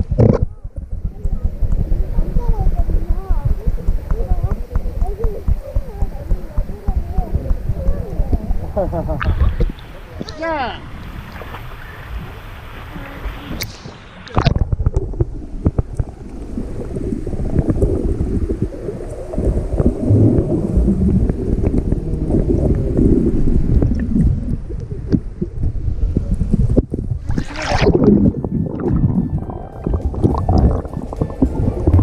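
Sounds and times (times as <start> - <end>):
small underwater knocks: 0.0 - 10.4
underwater rumbling and gurgling: 0.0 - 32.0
water splash: 3.5 - 25.3, 27.2 - 32.0.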